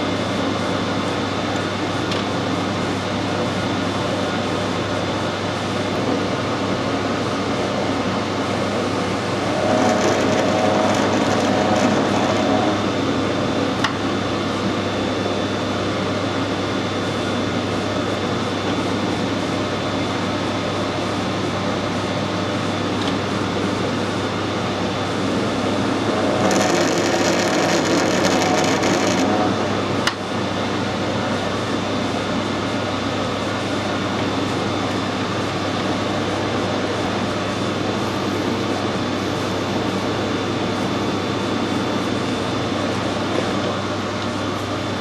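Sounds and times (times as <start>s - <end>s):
metal lathe motor and gear hum: 0.0s - 45.0s.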